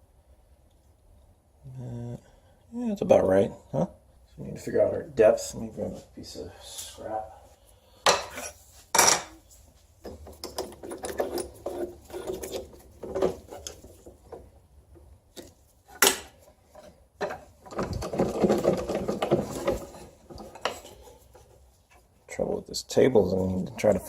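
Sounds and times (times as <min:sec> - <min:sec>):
wood and tools clattering on bench: 0:08.1 - 0:09.4, 0:10.0 - 0:21.5.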